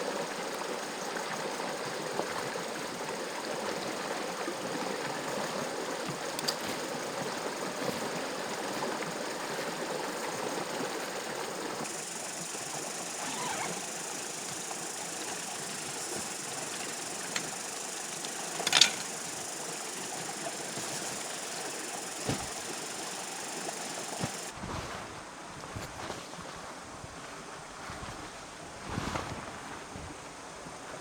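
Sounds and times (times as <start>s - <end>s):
stream water flowing: 0.0s - 24.6s
sharp clicks or knocks: 16.0s - 19.3s.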